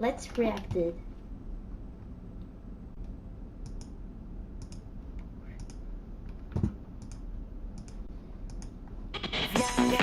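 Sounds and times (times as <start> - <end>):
computer mouse clicking: 3.0 - 4.0, 4.6 - 8.8.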